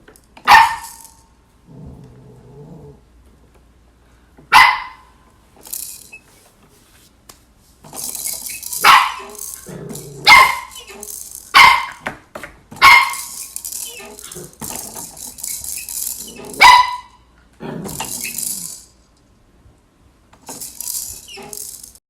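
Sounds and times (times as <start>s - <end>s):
dog barking high-pitched: 0.4s - 1.2s, 4.5s - 5.2s, 8.6s - 12.0s, 12.8s - 14.3s, 16.2s - 17.2s.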